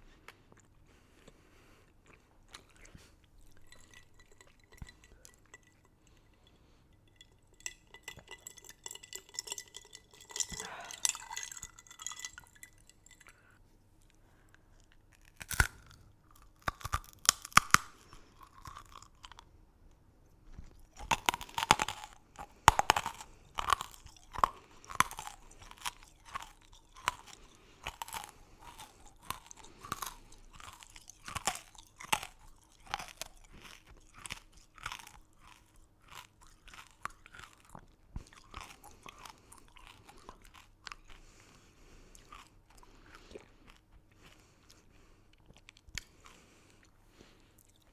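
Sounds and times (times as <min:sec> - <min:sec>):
crunching hard candy: 0:14.8 - 0:19.5, 0:20.6 - 0:46.8.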